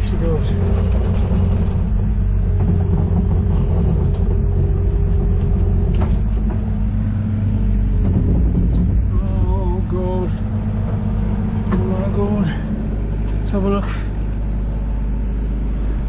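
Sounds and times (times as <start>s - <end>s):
excavator engine running: 0.0s - 16.0s
hydraulic whine: 0.0s - 16.0s.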